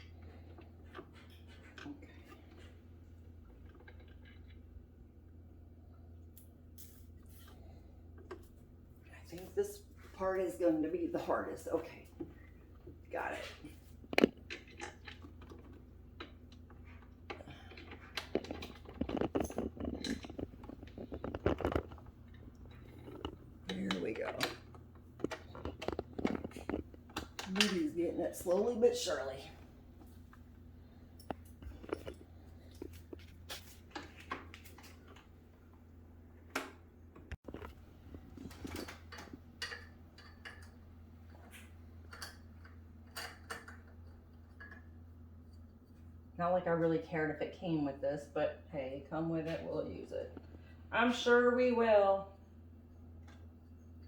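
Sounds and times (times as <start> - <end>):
steady low hum: 0.0 - 54.0
scratchy scraping of parts: 12.3 - 35.3.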